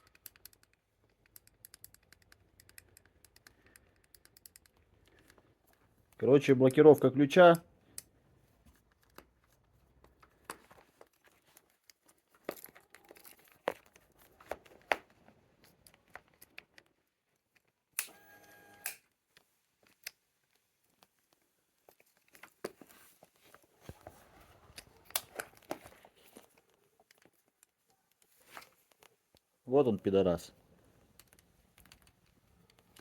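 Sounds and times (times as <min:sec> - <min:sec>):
clicks and taps on key lock: 0:00.0 - 0:07.1, 0:31.0 - 0:33.0.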